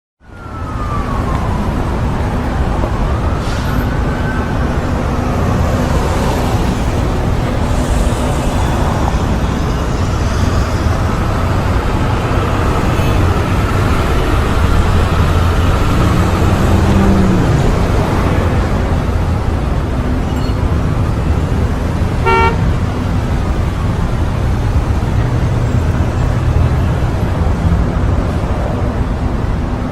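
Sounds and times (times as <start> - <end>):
siren wailing: 0.2 - 22.6
dense traffic noise: 0.2 - 29.9.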